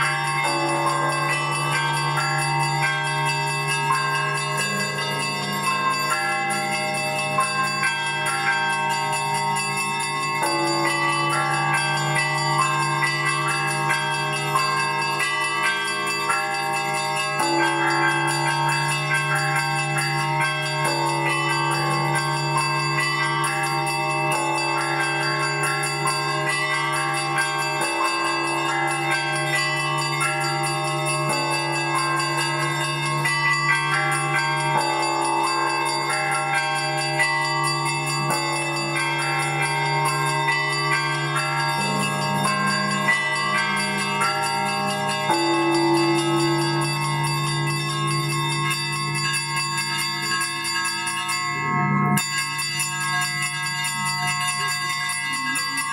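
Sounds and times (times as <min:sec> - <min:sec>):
deep bass church bells humming: 0:00.0 - 0:55.9
small church bells ringing: 0:00.0 - 0:55.9.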